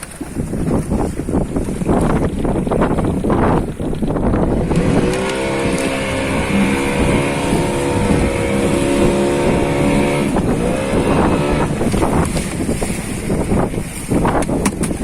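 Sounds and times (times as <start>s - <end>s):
boat engine running: 0.0s - 15.0s.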